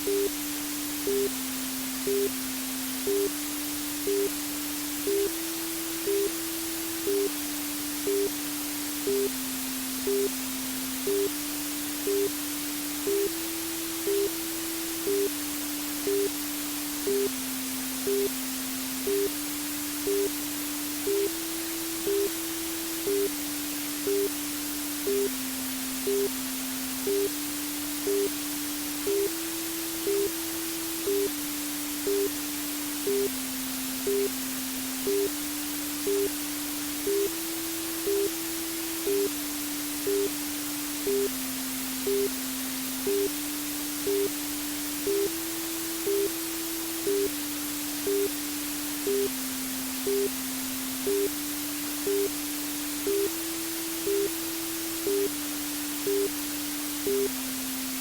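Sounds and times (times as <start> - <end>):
soft synthetic tune: 0.0 - 0.4, 1.0 - 2.4, 3.0 - 3.4, 27.1 - 27.4, 28.1 - 28.4, 29.1 - 29.4, 30.1 - 30.4, 31.0 - 31.4, 32.0 - 32.4, 33.0 - 35.4, 36.0 - 36.4, 37.1 - 37.4, 38.0 - 38.4, 39.0 - 39.4, 40.1 - 40.4, 41.0 - 41.4, 42.0 - 43.4, 44.1 - 44.4, 50.0 - 50.4, 51.0 - 51.4
white noise hiss: 0.0 - 58.0.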